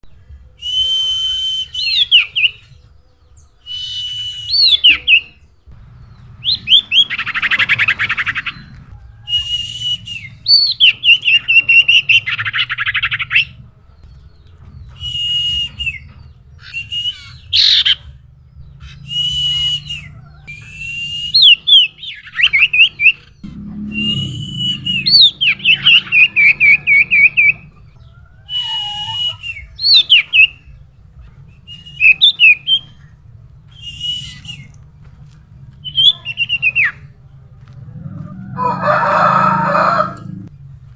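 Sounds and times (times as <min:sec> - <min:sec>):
bird singing whistled phrases: 0:00.6 - 0:02.8, 0:03.6 - 0:05.4, 0:09.3 - 0:13.5, 0:14.9 - 0:18.0, 0:18.9 - 0:23.2, 0:28.5 - 0:30.6, 0:31.7 - 0:33.0, 0:33.7 - 0:34.8, 0:35.8 - 0:37.0.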